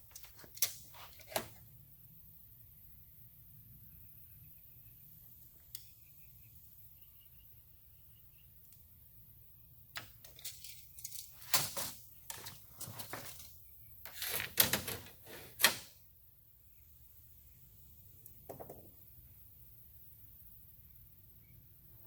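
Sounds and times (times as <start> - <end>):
small parts clinking on steel: 0.1 - 1.6, 9.9 - 15.8.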